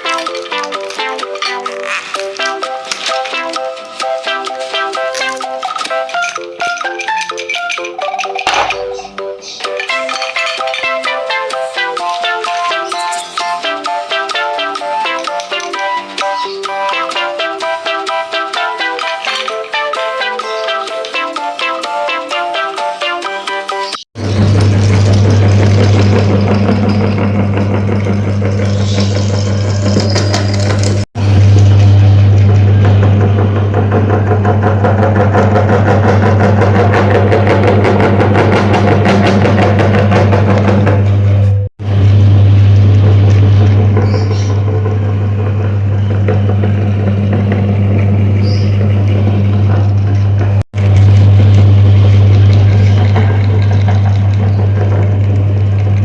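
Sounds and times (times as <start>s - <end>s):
electric meat grinder motor hum: 24.2s - 56.0s.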